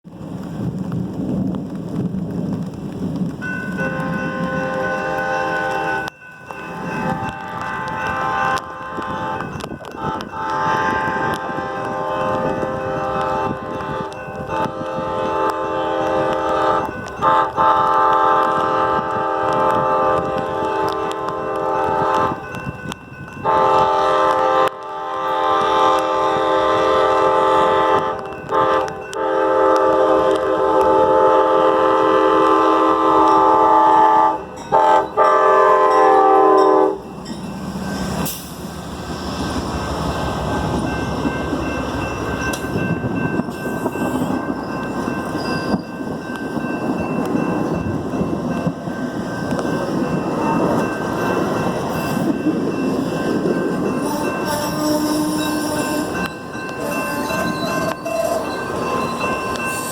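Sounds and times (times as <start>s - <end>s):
train wheels rumbling on rails: 0.0s - 59.9s
train air horn blasts: 3.8s - 6.1s, 6.7s - 22.5s, 23.4s - 37.1s, 53.9s - 58.5s.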